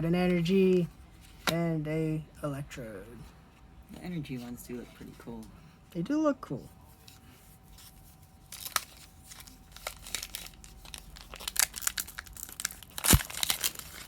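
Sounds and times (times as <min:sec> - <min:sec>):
foil wrapper crinkling: 0:08.5 - 0:14.0
wrapper snap: 0:09.8 - 0:14.0.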